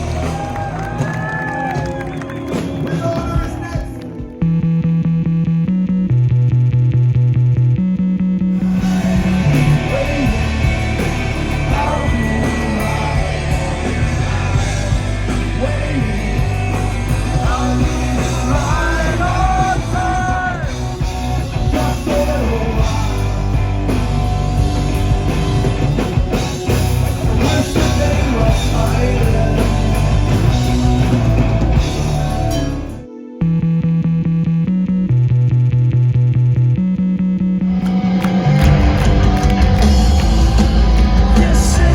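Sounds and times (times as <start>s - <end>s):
punk rock band playing live: 0.0s - 4.6s, 8.5s - 33.1s, 37.8s - 41.9s
sung and shouted vocals: 8.6s - 23.9s, 27.3s - 31.3s, 39.8s - 41.9s.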